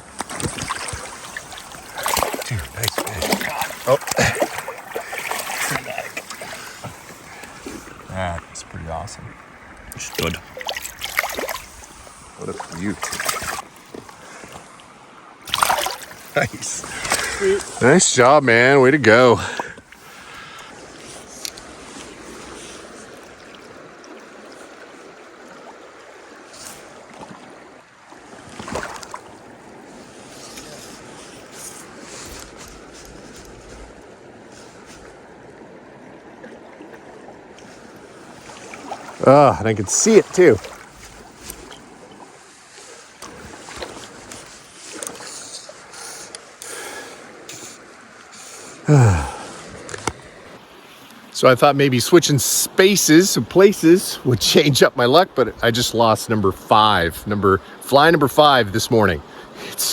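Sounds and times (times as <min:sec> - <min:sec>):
water splash: 0:00.0 - 0:07.9, 0:09.9 - 0:13.7, 0:15.4 - 0:18.0, 0:26.6 - 0:29.4, 0:37.6 - 0:45.6
river water flowing: 0:00.0 - 0:59.9
man groaning: 0:48.9 - 0:49.5.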